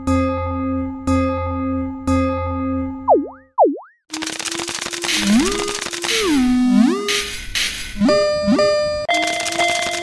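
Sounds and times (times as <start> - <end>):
electronic warning tones: 5.2 - 7.3, 8.0 - 9.1.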